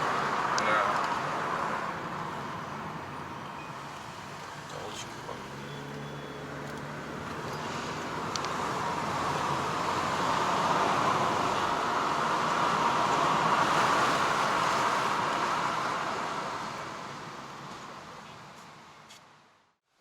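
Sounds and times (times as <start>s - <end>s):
tyre and road noise: 0.0s - 19.8s.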